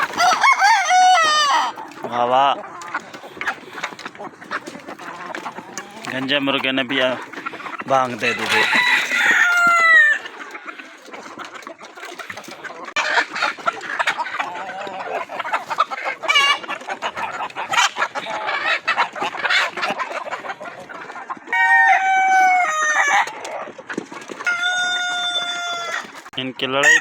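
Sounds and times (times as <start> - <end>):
rooster crowing: 0.0 - 1.8, 8.2 - 10.2, 21.5 - 23.3, 24.5 - 26.1
chickens clucking: 0.0 - 27.0.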